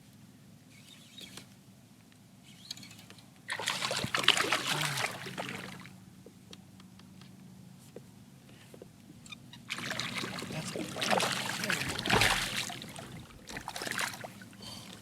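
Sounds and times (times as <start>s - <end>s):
faint water trickles: 3.4s - 6.2s, 9.2s - 15.0s
water splashing against kayak: 3.5s - 5.9s, 9.7s - 15.0s.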